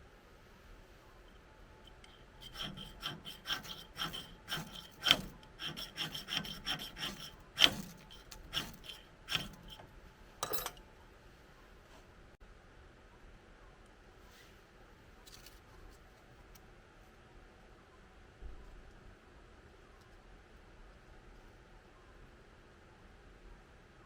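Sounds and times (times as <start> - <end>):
fire-starter rod scraping: 1.8 - 10.8.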